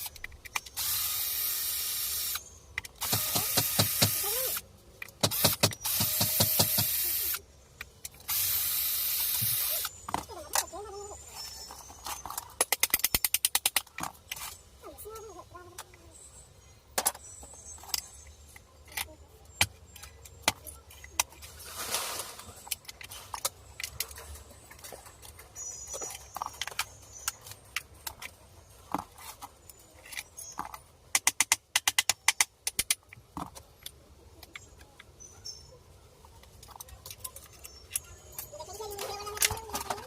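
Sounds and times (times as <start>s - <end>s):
metal tools clinking and tapping: 22.7s - 30.9s.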